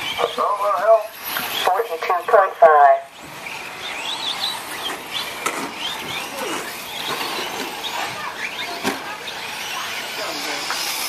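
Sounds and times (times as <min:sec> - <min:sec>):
toy truck motors whining: 0:00.0 - 0:11.0.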